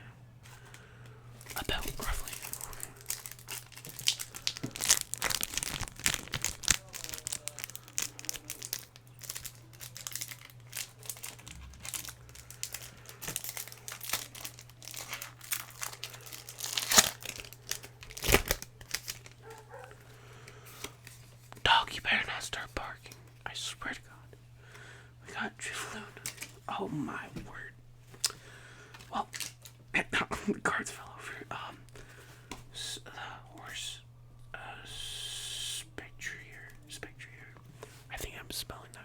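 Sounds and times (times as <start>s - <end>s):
steady low hum: 0.0s - 39.0s
foil wrapper crinkling and tearing: 1.4s - 20.0s, 26.2s - 26.6s, 29.0s - 29.8s.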